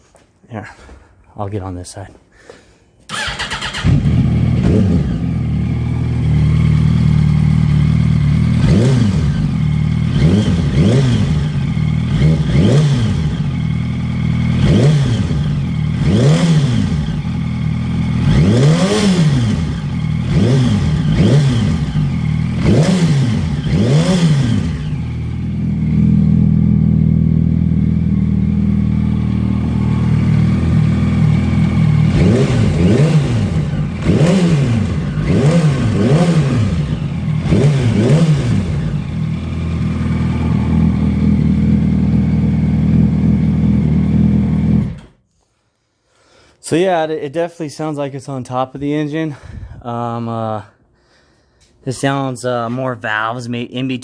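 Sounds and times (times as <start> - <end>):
motorcycle engine idling and revving: 3.1 - 45.2.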